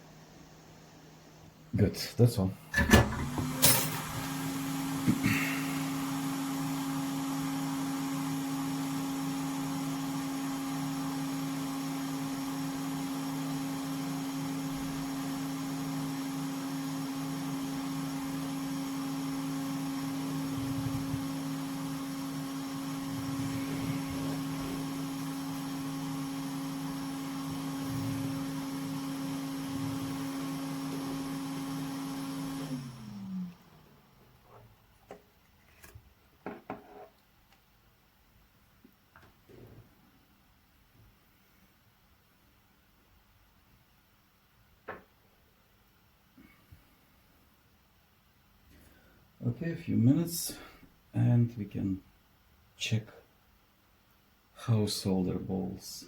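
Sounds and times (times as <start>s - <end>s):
blower fan humming: 2.3s - 35.2s.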